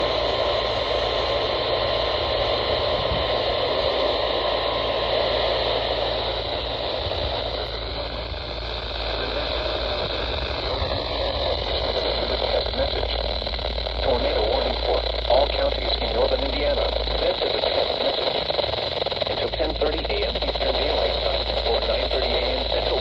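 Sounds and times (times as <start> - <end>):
radio static and hiss: 0.0 - 23.0.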